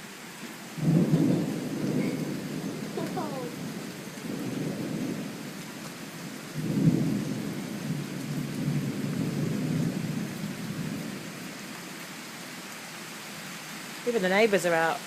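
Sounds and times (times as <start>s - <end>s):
steady rain: 0.0s - 15.0s
thunder rumbling: 0.8s - 11.6s.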